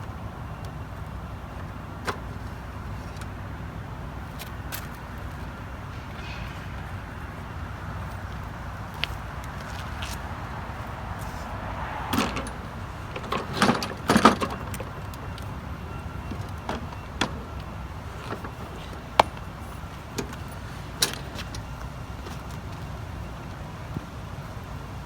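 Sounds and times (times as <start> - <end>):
clicks and rattles on lawn mower: 12.1 - 22.8.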